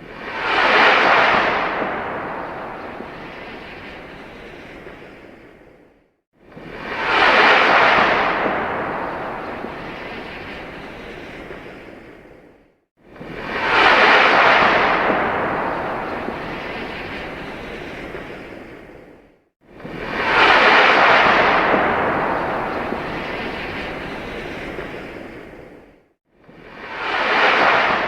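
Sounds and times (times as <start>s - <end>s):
rocket launch roar: 0.0s - 4.7s, 6.8s - 11.4s, 13.4s - 18.0s, 20.0s - 25.1s, 26.8s - 28.0s.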